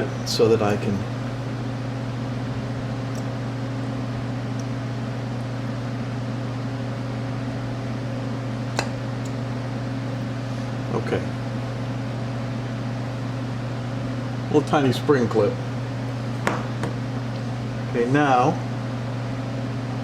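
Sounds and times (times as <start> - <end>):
machine humming: 0.0 - 20.0.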